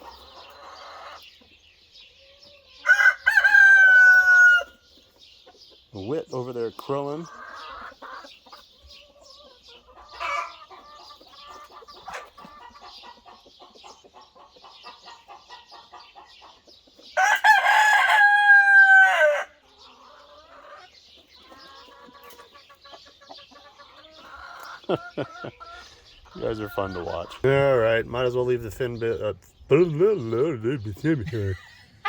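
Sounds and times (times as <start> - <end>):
chickens clucking: 0.0 - 32.0
rooster crowing: 2.8 - 4.8, 17.2 - 19.6.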